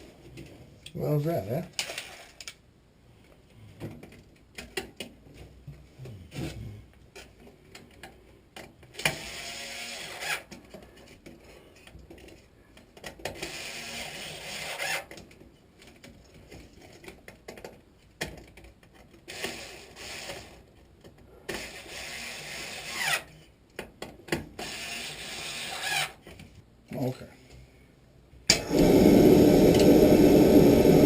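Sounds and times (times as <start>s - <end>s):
rustling and scraping: 14.8s - 19.3s.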